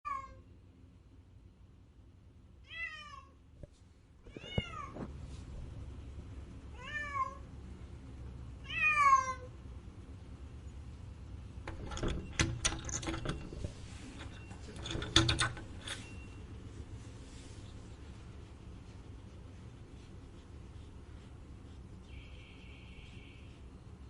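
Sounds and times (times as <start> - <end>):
cat meowing: 2.6 - 3.3, 6.7 - 7.4, 8.6 - 9.5.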